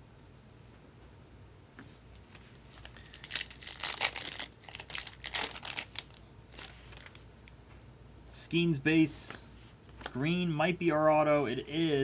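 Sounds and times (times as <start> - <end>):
foil wrapper tearing and crinkling: 2.3 - 7.2.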